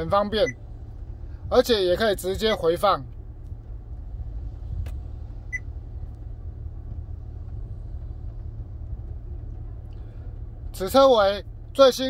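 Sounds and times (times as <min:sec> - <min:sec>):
car engine idling: 0:00.0 - 0:12.0.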